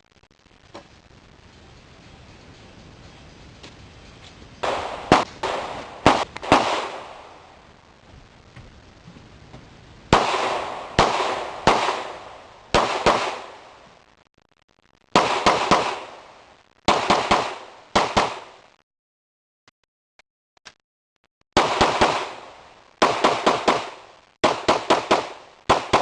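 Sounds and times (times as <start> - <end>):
pistol shots echoing: 4.6 - 7.4, 10.1 - 13.8, 15.2 - 16.2, 16.9 - 18.5, 21.6 - 26.0.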